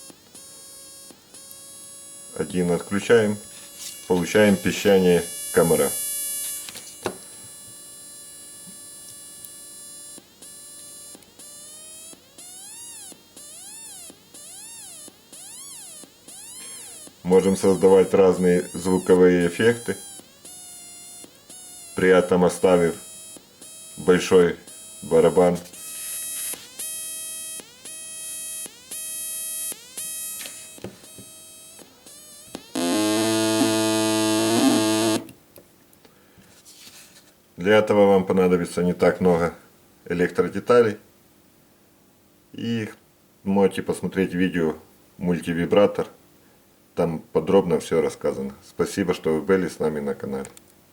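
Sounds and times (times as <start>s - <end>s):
wavering electronic tones: 0.0s - 35.3s
high buzz swooping in pitch: 7.9s - 35.3s.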